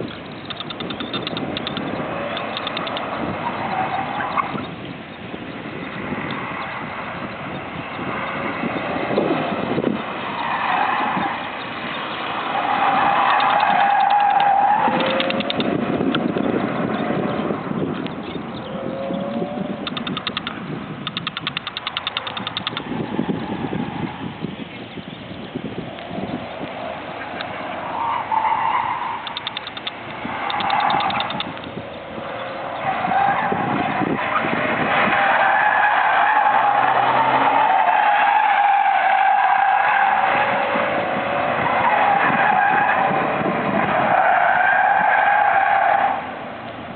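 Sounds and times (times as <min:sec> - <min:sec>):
sharp ticks: 0:00.0 - 0:03.2, 0:13.2 - 0:16.4, 0:17.9 - 0:22.9, 0:29.2 - 0:32.0
car engine revving: 0:05.6 - 0:24.4.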